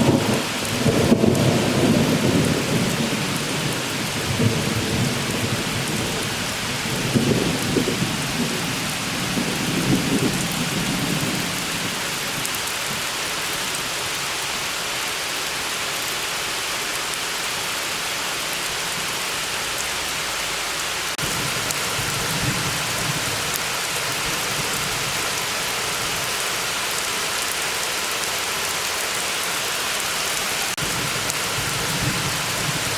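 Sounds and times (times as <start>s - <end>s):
thunder rumbling: 0.0s - 12.4s, 21.2s - 25.4s, 30.8s - 32.9s
rain falling steadily: 0.0s - 32.9s.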